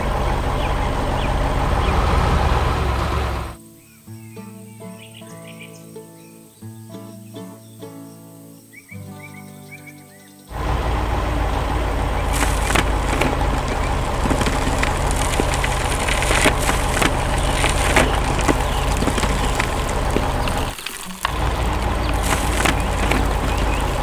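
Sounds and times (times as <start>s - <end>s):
heavy machine engine rumble: 0.0s - 3.6s, 10.5s - 24.0s
cracks and crunches: 11.5s - 24.0s.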